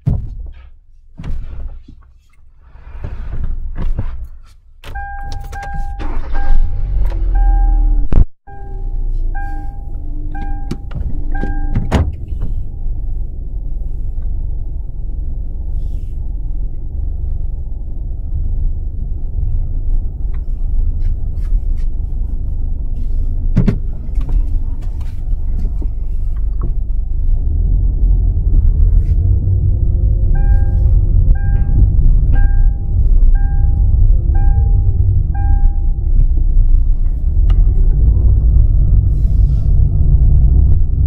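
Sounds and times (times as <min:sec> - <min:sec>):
road and engine rumble: 0:00.0 - 0:41.0
repeating car chime: 0:05.0 - 0:06.6, 0:08.5 - 0:12.0, 0:30.4 - 0:36.1.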